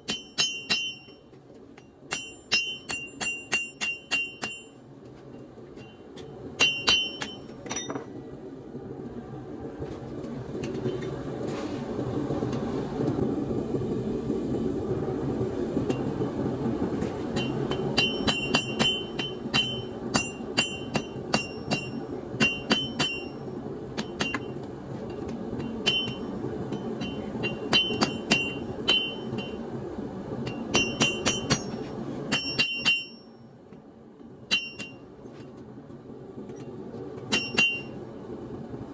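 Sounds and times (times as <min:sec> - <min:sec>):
hammer striking steel on anvil: 0:00.0 - 0:04.8, 0:05.8 - 0:08.1, 0:17.3 - 0:23.4, 0:24.0 - 0:29.6, 0:30.4 - 0:33.4, 0:34.5 - 0:35.1, 0:37.3 - 0:38.0.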